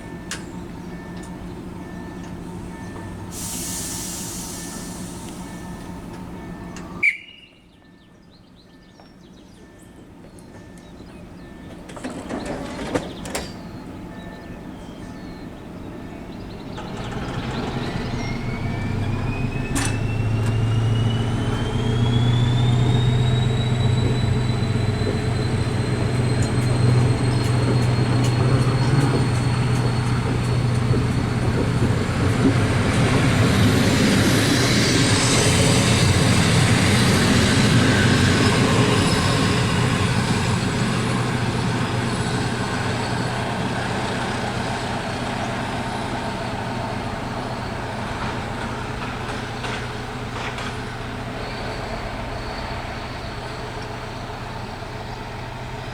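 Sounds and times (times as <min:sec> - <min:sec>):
diesel locomotive engine: 0:00.0 - 0:55.9
rising whine: 0:16.8 - 0:43.2.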